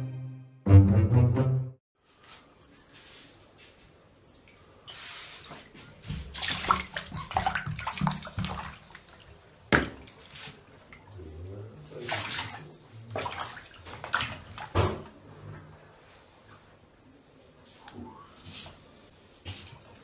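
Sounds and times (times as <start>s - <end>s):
water splashing and sloshing: 4.3s - 16.8s.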